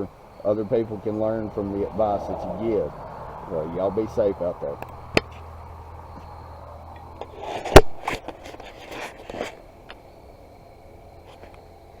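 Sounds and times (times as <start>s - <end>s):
handling scraping and knocks: 6.9s - 9.6s.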